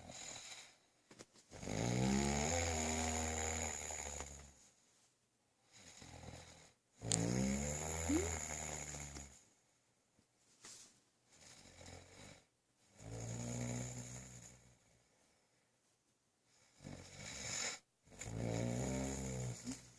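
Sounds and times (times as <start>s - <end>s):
person snoring: 1.6s - 4.5s, 5.7s - 9.3s, 11.4s - 14.8s, 16.7s - 19.9s.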